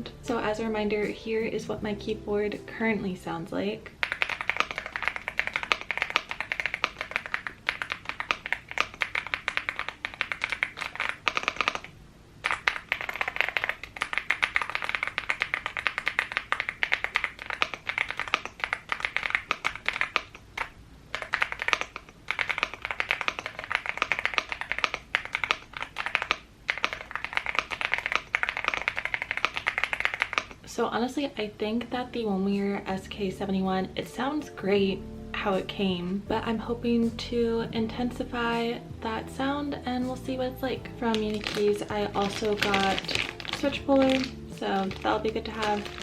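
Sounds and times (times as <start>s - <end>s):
typing on mechanical keyboard: 4.0s - 30.6s, 40.9s - 46.0s.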